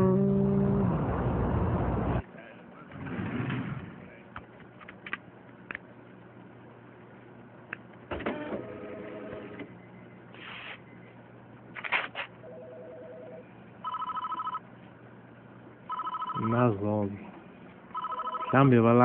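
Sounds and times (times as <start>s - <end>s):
telephone ringing: 8.3s - 9.6s, 12.4s - 14.7s, 15.9s - 16.7s, 17.9s - 19.0s.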